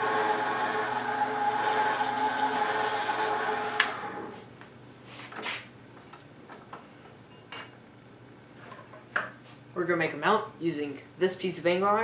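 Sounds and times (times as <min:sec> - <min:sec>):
small motor whirring: 0:00.0 - 0:04.4.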